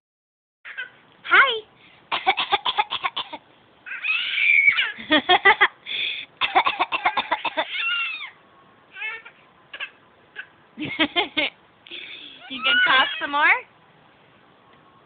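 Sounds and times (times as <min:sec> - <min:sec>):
baby high gliding squeals: 0:03.9 - 0:05.0, 0:07.7 - 0:08.4, 0:12.4 - 0:13.5.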